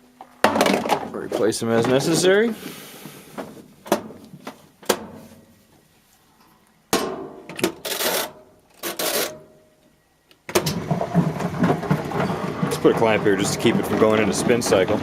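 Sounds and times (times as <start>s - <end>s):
plastic bins knocking and clattering: 0.3s - 2.6s, 3.4s - 5.4s, 10.5s - 15.0s
scraping rattling bursts: 10.7s - 15.0s.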